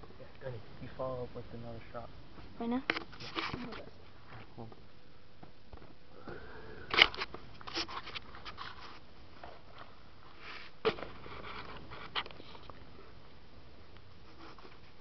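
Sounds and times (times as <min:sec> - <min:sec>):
air rifle handling clicks and rustles: 0:06.9 - 0:08.8.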